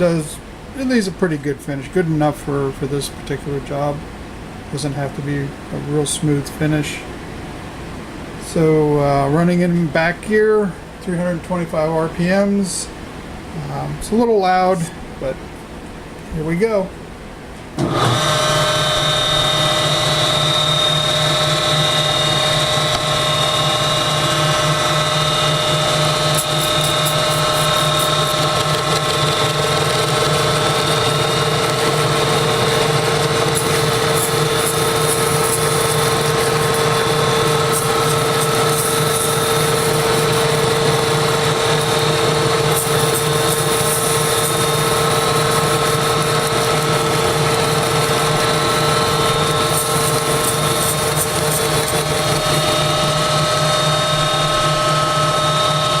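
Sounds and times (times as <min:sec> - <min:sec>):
milling machine cutting metal: 0:17.8 - 0:56.0.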